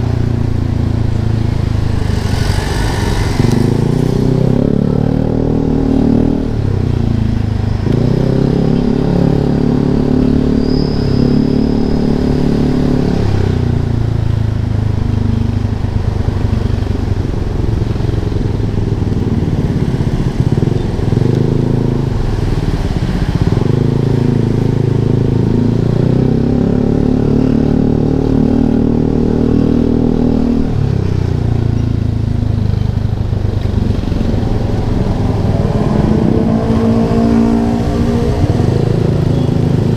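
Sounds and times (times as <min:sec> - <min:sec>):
loud scooter engine revving: 0:01.4 - 0:07.0, 0:33.7 - 0:39.9.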